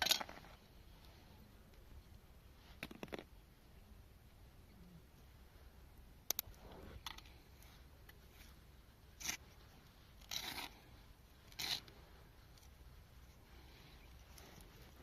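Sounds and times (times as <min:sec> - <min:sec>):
rasping scrapes: 0:10.2 - 0:10.9, 0:11.5 - 0:12.0.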